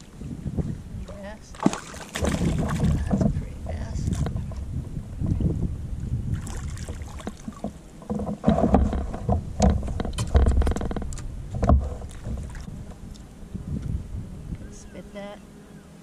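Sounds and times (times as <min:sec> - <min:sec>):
water splashing: 0:00.0 - 0:04.7, 0:05.3 - 0:13.4
knocks and handling on kayak: 0:00.0 - 0:14.0.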